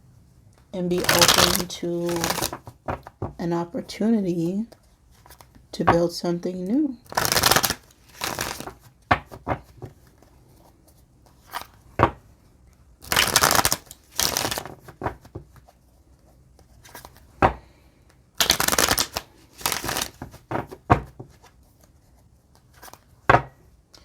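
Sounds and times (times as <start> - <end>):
cards being shuffled: 0.6 - 3.4, 7.0 - 12.2, 13.0 - 17.6, 18.4 - 23.2
cards tapping and clicking: 1.0 - 3.4, 7.1 - 10.3, 13.0 - 15.6, 16.9 - 21.4.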